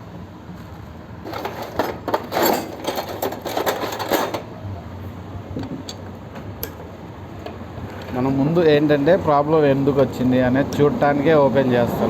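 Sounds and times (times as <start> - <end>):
metal tools clinking and rattling: 1.2 - 4.6.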